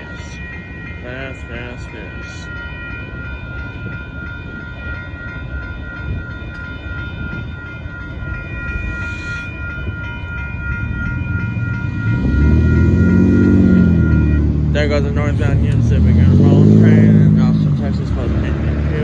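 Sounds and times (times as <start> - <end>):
high-pitched ringing tone: 0.0 - 15.6
freight train cars rumbling: 0.0 - 19.0
road vehicle engine: 10.2 - 19.0.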